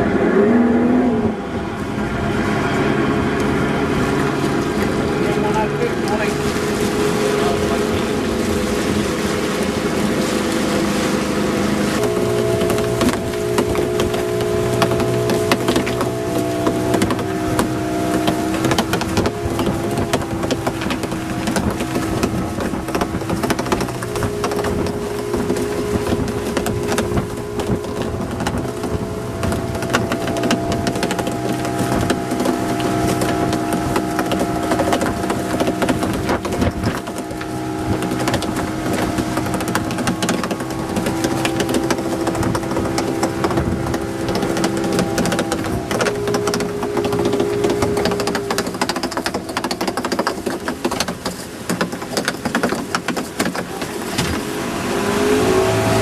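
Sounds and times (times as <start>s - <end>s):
boat engine running: 0.0s - 56.0s
clattering and knocking: 12.3s - 54.4s.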